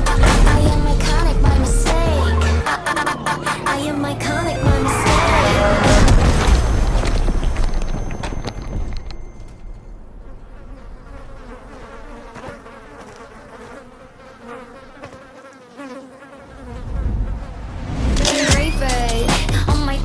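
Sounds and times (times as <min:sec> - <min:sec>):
insect-like buzzing drone: 0:10.2 - 0:18.6.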